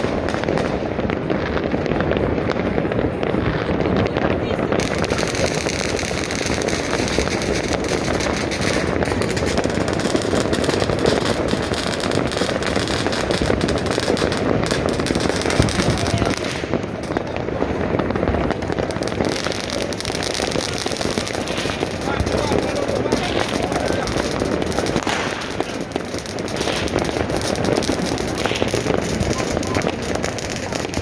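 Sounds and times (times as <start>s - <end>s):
fireworks and firecrackers crackling: 0.0s - 31.0s.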